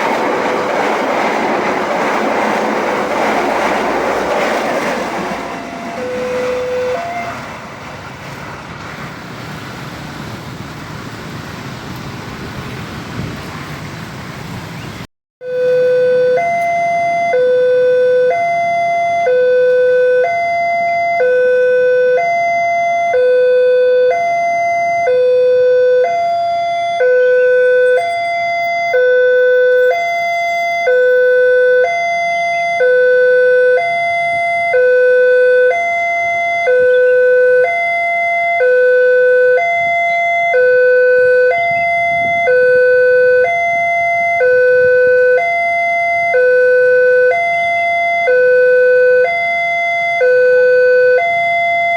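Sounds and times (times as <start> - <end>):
level crossing alarm two-tone: 5.5 - 7.3, 15.4 - 51.9.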